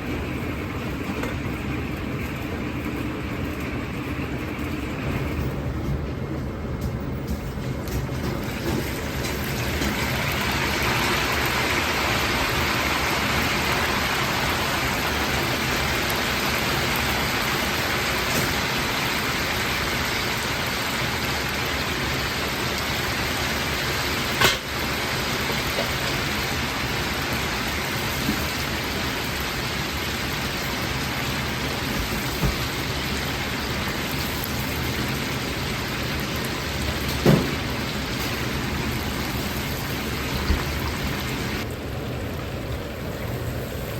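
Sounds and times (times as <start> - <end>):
wings sizzling in hot oil: 8.4 - 41.7.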